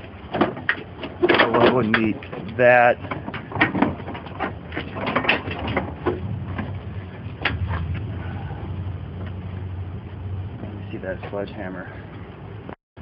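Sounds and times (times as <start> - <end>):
steady low hum: 0.0 - 12.8
sheet metal knocks and clanks: 0.3 - 6.8.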